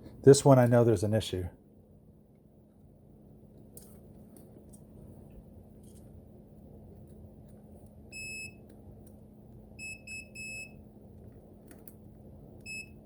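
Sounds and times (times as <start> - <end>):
faint steady hum: 0.0 - 13.0
continuity tester beeping: 8.1 - 8.7, 9.8 - 10.9, 12.6 - 13.0.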